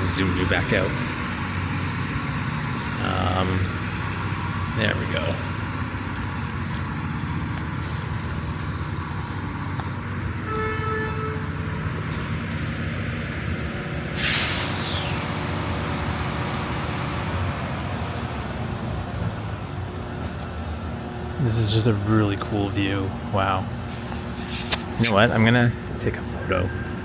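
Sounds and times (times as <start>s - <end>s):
low rumble of vehicles: 0.0s - 27.0s
short pitched tone: 10.4s - 11.6s
air brake hiss: 14.1s - 15.2s.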